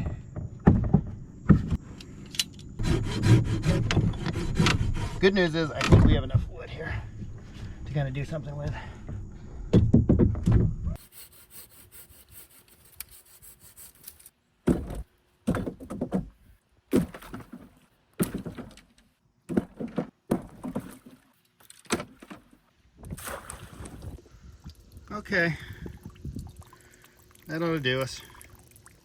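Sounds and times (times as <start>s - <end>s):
woody knocks and scrapes: 2.8s - 6.5s, 9.8s - 22.6s.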